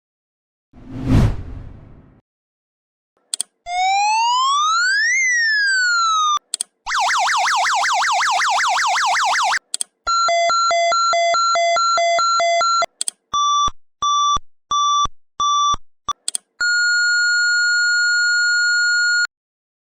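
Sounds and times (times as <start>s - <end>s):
small clicks: 3.3s - 3.6s, 6.5s - 6.8s, 9.6s - 10.0s, 12.9s - 13.2s, 16.1s - 16.5s
electronic alarm buzzer: 6.9s - 9.6s.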